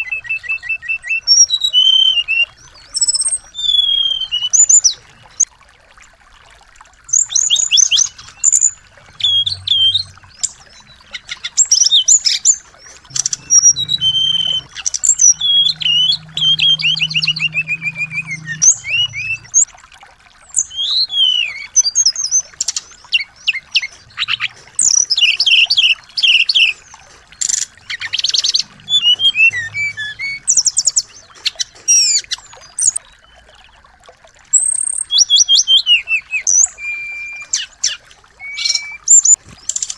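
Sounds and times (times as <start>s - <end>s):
songbirds chirping and trilling: 7.1s - 19.8s, 20.4s - 34.0s.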